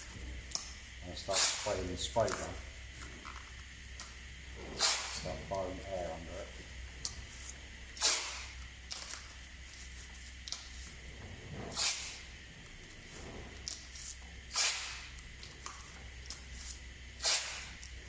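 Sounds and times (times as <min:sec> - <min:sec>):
compressed air hissing: 0:00.0 - 0:18.0.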